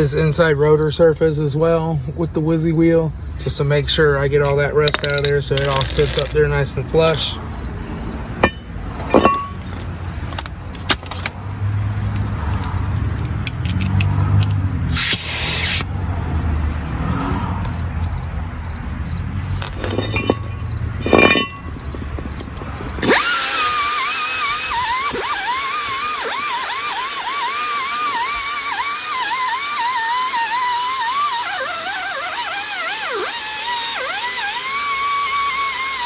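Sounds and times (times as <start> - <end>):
angle grinder scrubbing rust: 14.9 - 15.9, 23.0 - 36.0.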